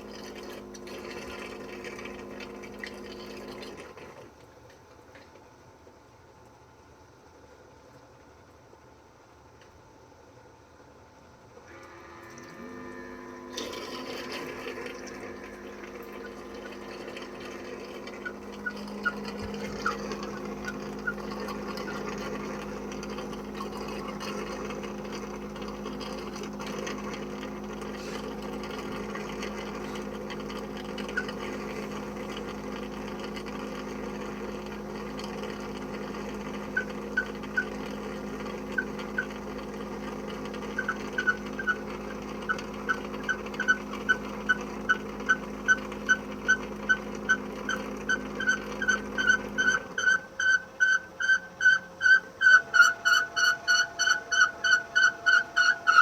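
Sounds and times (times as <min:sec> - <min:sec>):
robot vacuum motor hum with water: 0:00.0 - 0:04.5, 0:11.7 - 0:56.0
short high squeaks: 0:11.7 - 0:22.5, 0:40.7 - 0:56.0.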